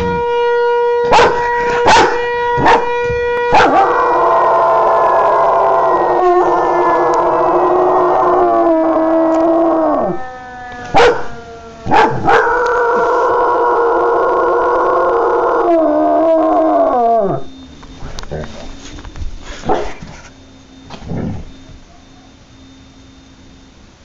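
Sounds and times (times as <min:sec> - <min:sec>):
dog howling: 0:03.5 - 0:17.5.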